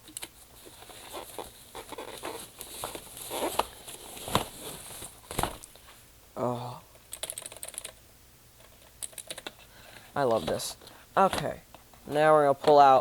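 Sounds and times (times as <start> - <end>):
packaging rustling: 0.6 - 5.9.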